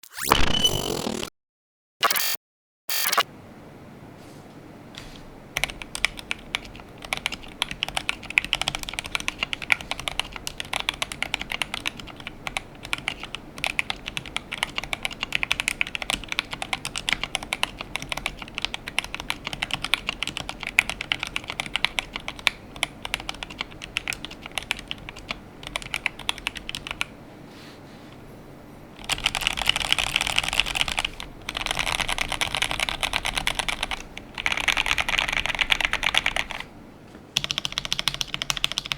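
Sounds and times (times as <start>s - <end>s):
mechanical keyboard typing: 5.6s - 27.1s, 29.0s - 36.7s, 37.4s - 38.9s.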